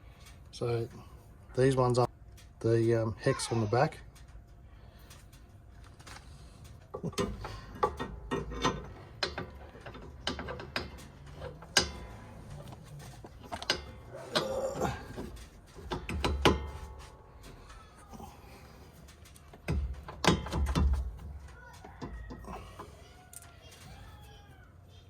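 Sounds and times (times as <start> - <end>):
metal tools clicking and knocking: 6.6 - 17.8, 18.6 - 24.2.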